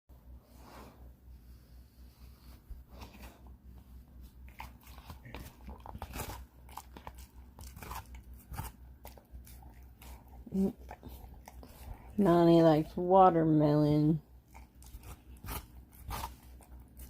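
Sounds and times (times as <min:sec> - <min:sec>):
dog crunching watermelon: 0:04.2 - 0:13.1, 0:14.4 - 0:17.0.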